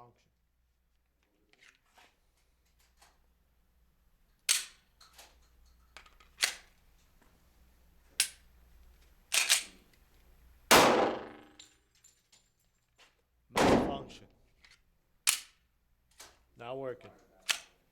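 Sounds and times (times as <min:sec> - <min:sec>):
pistol gunshots: 0:10.7 - 0:11.4, 0:13.6 - 0:14.2.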